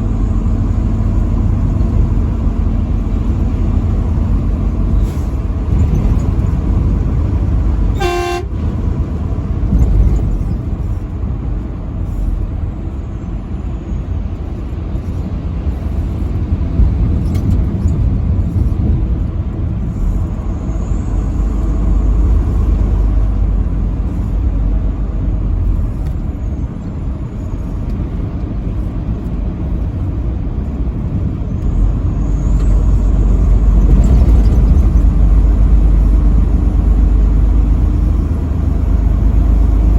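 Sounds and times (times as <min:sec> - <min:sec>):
vehicle driving on highway: 0:00.0 - 0:39.9
truck horn blast: 0:07.8 - 0:08.9.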